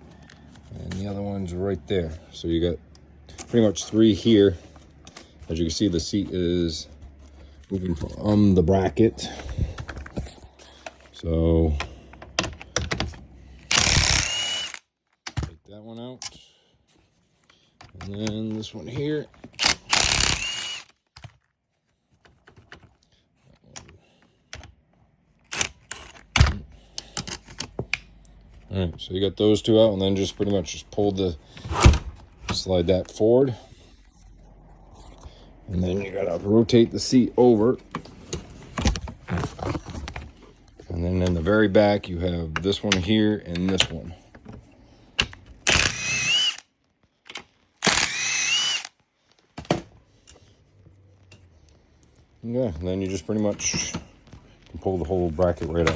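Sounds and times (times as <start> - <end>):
power drill whining: 13.6 - 14.8, 19.6 - 21.0, 45.6 - 46.7, 47.8 - 49.0.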